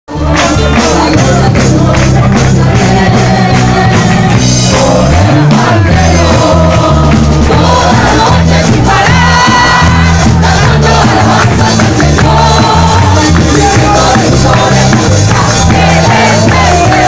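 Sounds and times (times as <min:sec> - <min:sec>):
upbeat worship music with singing: 0:00.1 - 0:17.0.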